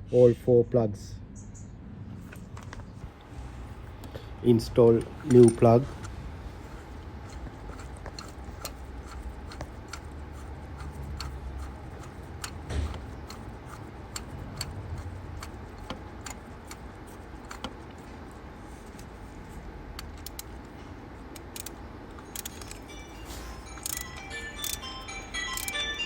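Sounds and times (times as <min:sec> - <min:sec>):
socket ratchet clicking: 0:04.6 - 0:17.9, 0:20.0 - 0:20.7, 0:21.3 - 0:22.9, 0:23.7 - 0:25.9.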